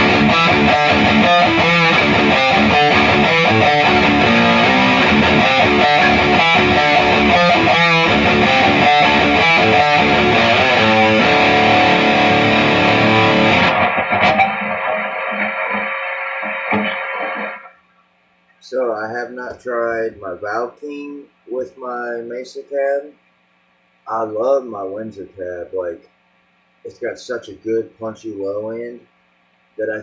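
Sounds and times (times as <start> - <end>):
distorted electric guitar riffs: 0.0 - 17.8.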